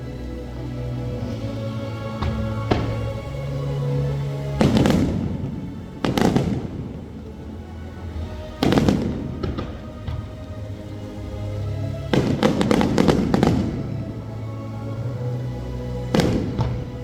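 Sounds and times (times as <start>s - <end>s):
music playing: 0.0s - 17.0s
fireworks crackling: 1.1s - 14.4s, 16.0s - 17.0s
fireworks booming: 4.6s - 7.2s, 8.6s - 10.3s, 16.1s - 16.9s.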